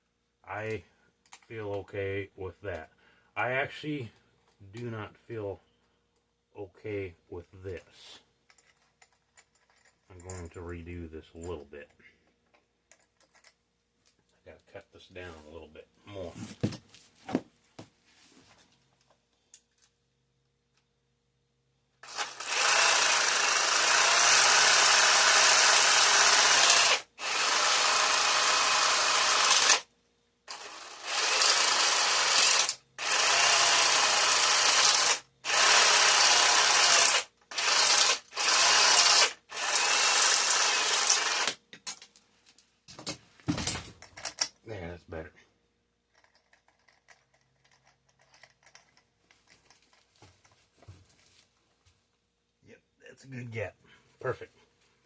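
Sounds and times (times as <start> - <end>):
power tool cutting metal: 22.0 - 29.9, 30.5 - 41.6.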